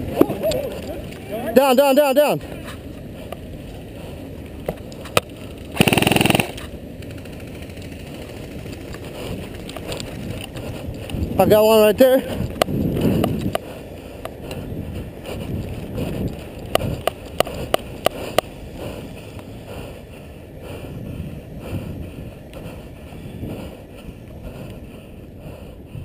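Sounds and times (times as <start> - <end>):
wind noise on microphone: 3.1 - 26.0
airsoft gun shots: 5.8 - 6.6.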